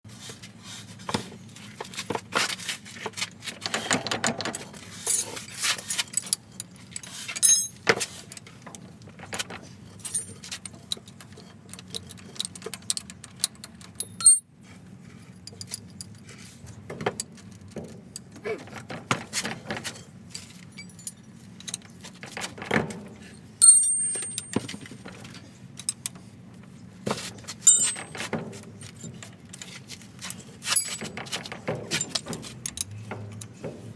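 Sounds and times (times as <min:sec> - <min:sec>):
metal tools clinking and clanking: 0:06.9 - 0:08.0, 0:10.0 - 0:11.0, 0:13.8 - 0:14.6, 0:20.3 - 0:21.8, 0:23.6 - 0:25.0, 0:27.7 - 0:29.8, 0:30.7 - 0:32.9.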